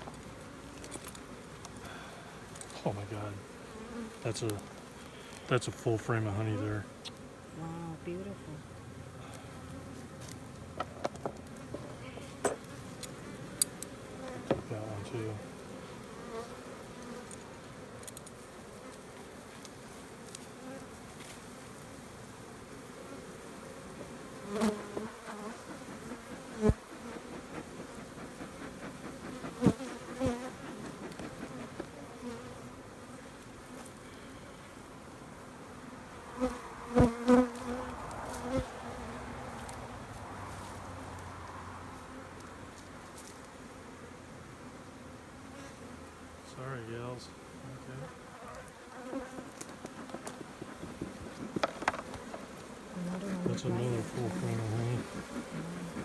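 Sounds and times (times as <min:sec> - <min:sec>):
honeybees buzzing: 0:00.0 - 0:56.0
sharp knocks on hive: 0:14.4 - 0:14.7, 0:50.0 - 0:52.5.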